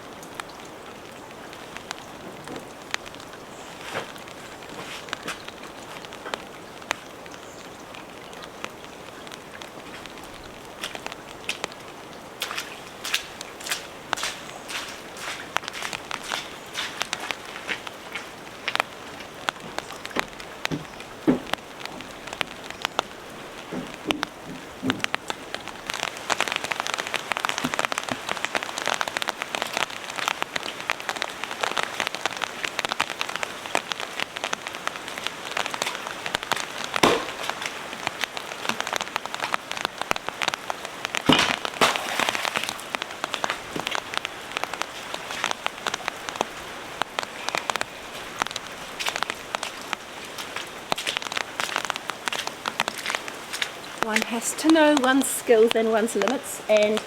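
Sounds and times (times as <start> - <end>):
heavy rain pattering: 0.0 - 57.0
louder knocks: 37.0 - 37.5.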